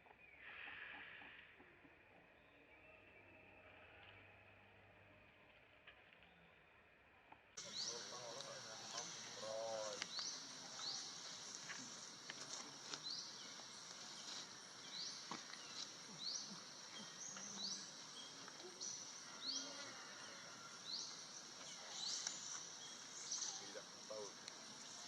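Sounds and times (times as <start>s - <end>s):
steady high hiss: 7.6s - 25.0s.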